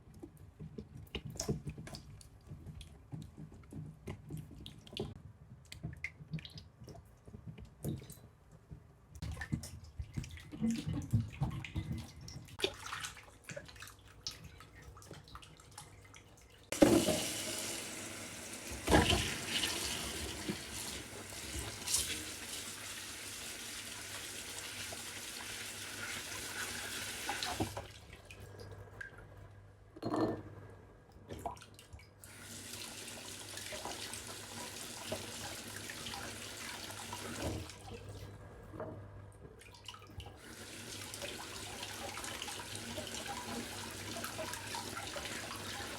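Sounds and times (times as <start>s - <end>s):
tap water running into sink: 16.7s - 27.9s, 32.2s - 37.8s, 40.4s - 45.9s.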